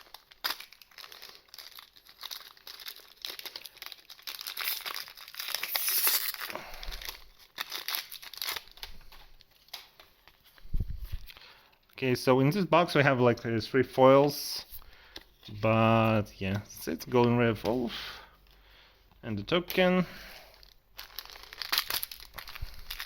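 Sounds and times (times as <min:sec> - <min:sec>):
card pack wrapper crinkling and tearing: 0:00.0 - 0:12.0, 0:19.7 - 0:23.0.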